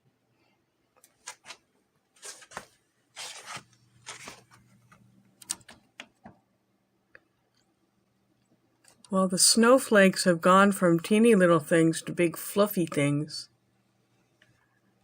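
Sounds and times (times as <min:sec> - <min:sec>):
short rustles and clicks: 0:01.0 - 0:06.1.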